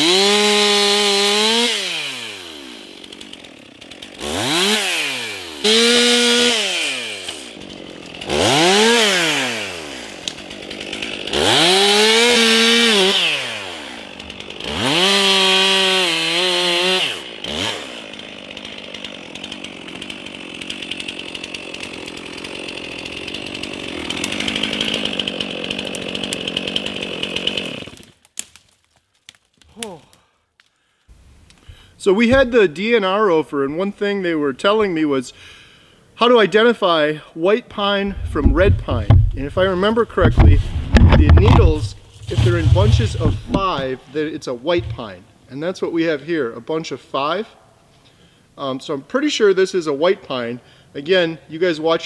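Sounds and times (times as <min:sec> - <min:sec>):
chainsaw revving and cutting wood: 0:00.0 - 0:28.2, 0:38.0 - 0:44.0, 0:44.7 - 0:45.2.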